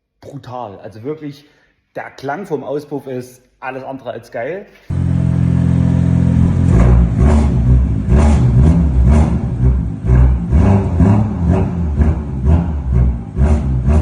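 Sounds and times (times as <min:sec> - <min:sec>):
car engine revving: 0:04.9 - 0:14.0.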